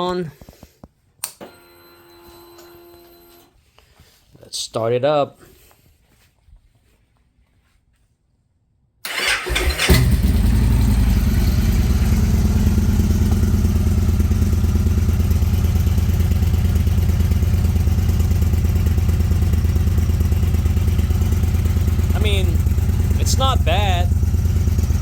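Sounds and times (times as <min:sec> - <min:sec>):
motorcycle engine cranking: 0:09.1 - 0:11.3
motorcycle engine idling: 0:10.0 - 0:25.0.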